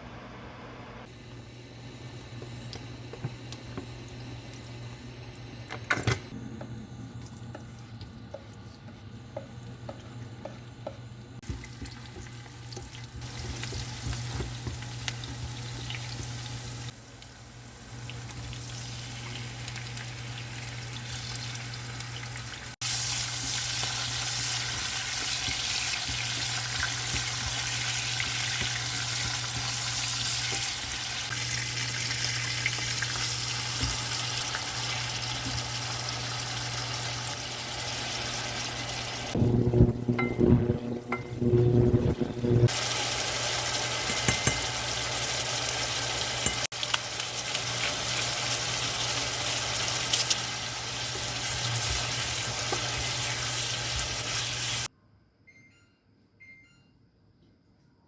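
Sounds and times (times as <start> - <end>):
food sizzling in a pan: 11.4 - 54.9
low hum: 39.3 - 42.7.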